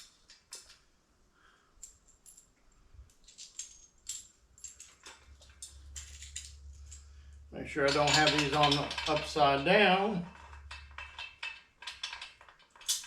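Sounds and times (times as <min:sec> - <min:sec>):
metal hardware clicking and clinking: 0:03.1 - 0:07.1, 0:07.8 - 0:13.0.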